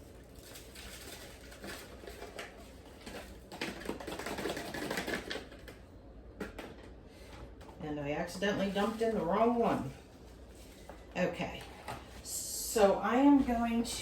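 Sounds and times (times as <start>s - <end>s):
plastic bags crinkling: 0.0s - 5.8s, 8.3s - 11.1s.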